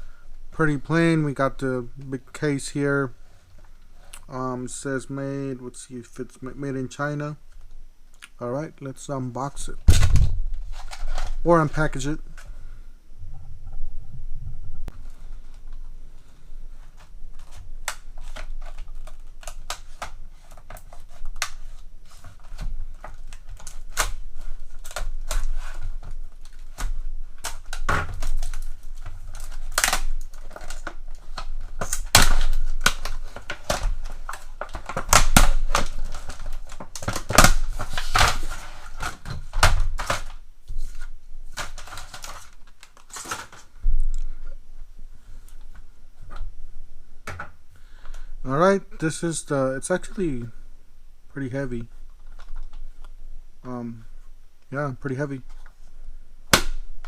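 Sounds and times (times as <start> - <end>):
packaging crinkling and tearing: 9.9 - 12.2, 14.9 - 44.3
packaging cracking and clicking: 16.8 - 44.3.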